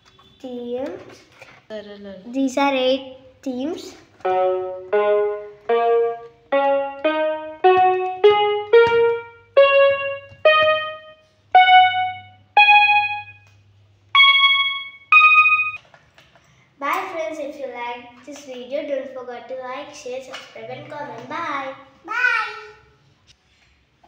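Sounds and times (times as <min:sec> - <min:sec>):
toy keyboard single notes: 0:04.2 - 0:13.5, 0:14.2 - 0:15.8.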